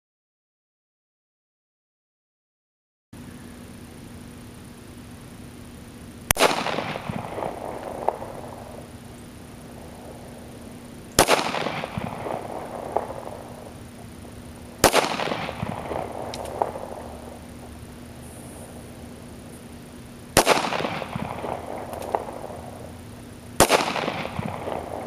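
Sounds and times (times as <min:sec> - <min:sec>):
pistol shots echoing: 0:06.3 - 0:08.9, 0:09.5 - 0:13.8, 0:14.8 - 0:17.4, 0:20.4 - 0:22.9, 0:23.6 - 0:25.0.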